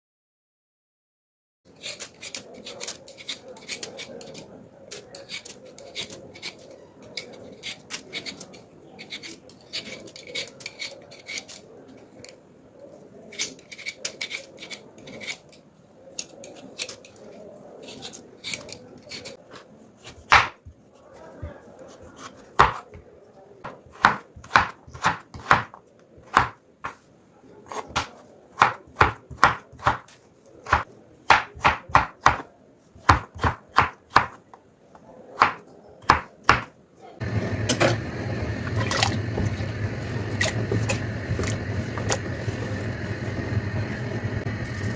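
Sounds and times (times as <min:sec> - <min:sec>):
knife chopping on cutting board: 0:23.7 - 0:26.6, 0:27.7 - 0:32.4, 0:33.0 - 0:34.4, 0:35.4 - 0:36.7.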